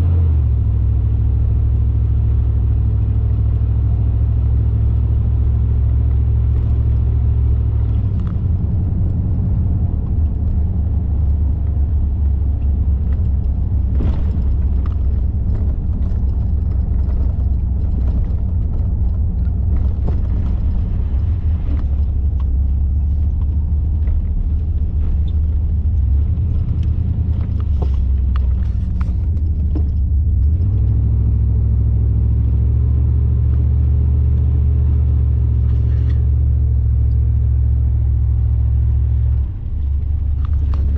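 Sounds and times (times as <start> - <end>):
car engine and road noise: 0.0 - 40.9
faint clicks and rattles: 7.8 - 31.0, 39.2 - 40.9.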